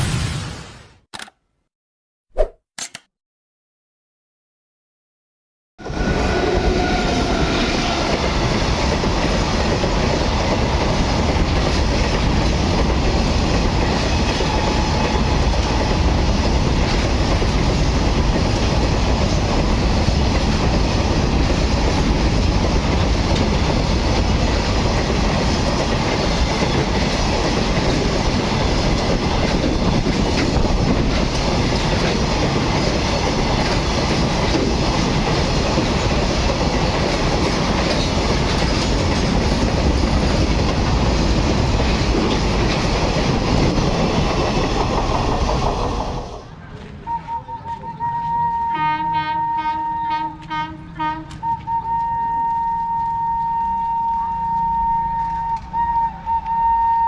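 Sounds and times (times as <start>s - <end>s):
train horn: 5.8s - 8.3s, 14.4s - 15.5s, 47.1s - 57.0s
train wheels rumbling on rails: 5.8s - 56.6s
train wheel clacks: 7.7s - 46.5s.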